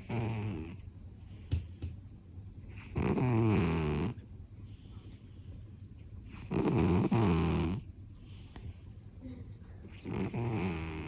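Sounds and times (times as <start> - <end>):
cat snoring: 0.0 - 0.8, 2.7 - 4.2, 6.3 - 7.9, 9.9 - 11.0.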